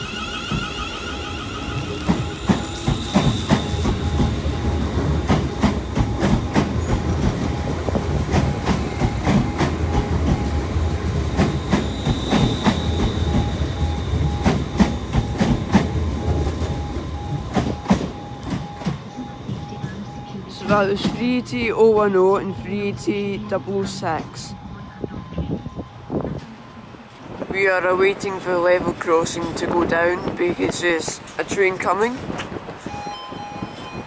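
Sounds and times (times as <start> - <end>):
train rumbling: 0.0 - 31.6
wheels clicking over rail joints: 0.1 - 20.2.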